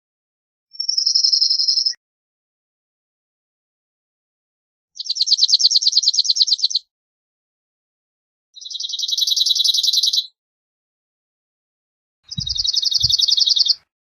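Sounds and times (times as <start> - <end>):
bird singing rattling trills: 0.8 - 2.0, 5.0 - 6.8, 8.6 - 10.3, 12.3 - 13.8.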